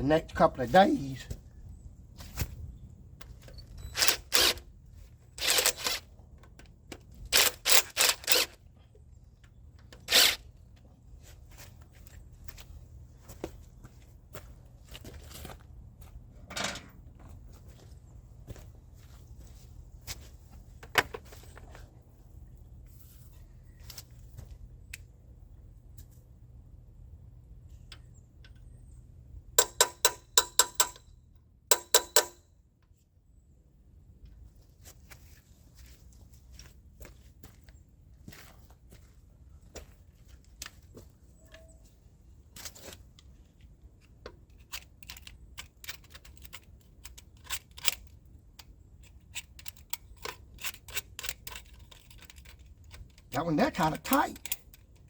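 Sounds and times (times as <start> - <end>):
rasping tool bursts: 5.4 - 6.0, 10.0 - 10.4.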